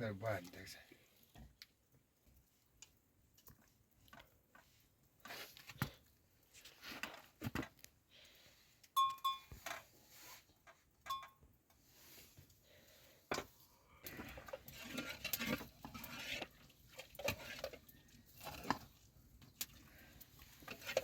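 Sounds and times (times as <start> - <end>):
short ringing clink: 9.0 - 9.5.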